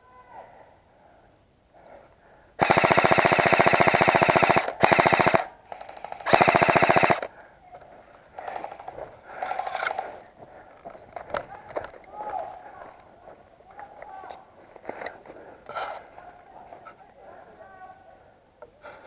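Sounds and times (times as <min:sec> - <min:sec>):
airsoft gun firing full-auto: 0:02.6 - 0:07.3.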